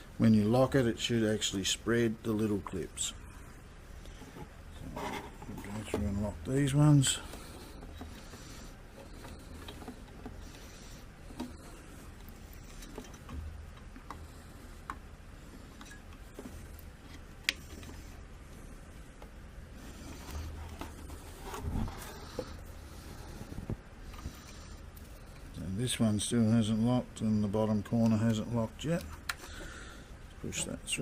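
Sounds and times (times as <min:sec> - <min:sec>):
plastic scraping and rubbing: 0:04.1 - 0:15.0, 0:19.7 - 0:25.6.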